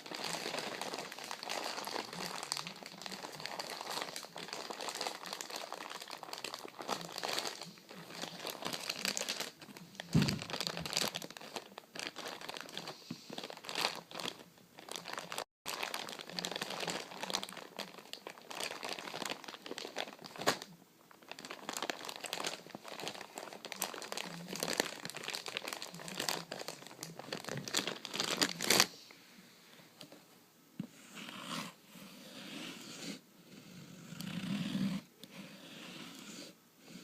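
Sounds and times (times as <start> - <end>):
material crinkling and crumpling: 0.0 - 29.0.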